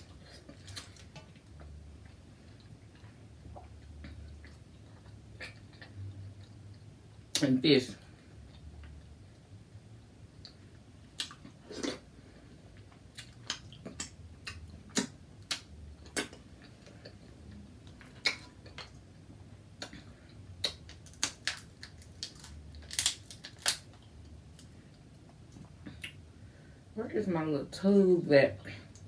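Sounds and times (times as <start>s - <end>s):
crab shells cracking: 20.6s - 24.7s.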